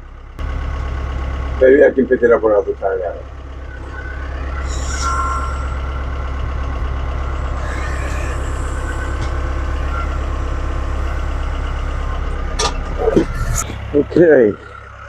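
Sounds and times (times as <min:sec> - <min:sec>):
tractor diesel engine running: 0:00.0 - 0:15.0
high-pitched tone: 0:03.4 - 0:13.6.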